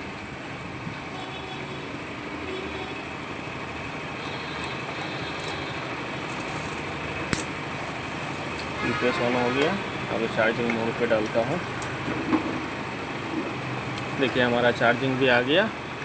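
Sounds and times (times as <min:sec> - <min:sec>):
inverter whirring hum: 0:04.1 - 0:16.0
sharp click: 0:06.3 - 0:07.6.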